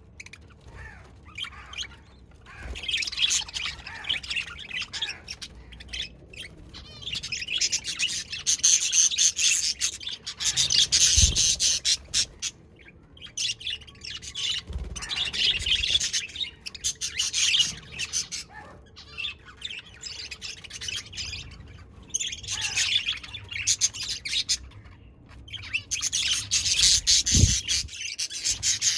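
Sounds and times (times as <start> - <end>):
budgerigars chirping: 6.8 - 12.6, 13.4 - 24.8, 25.5 - 28.9.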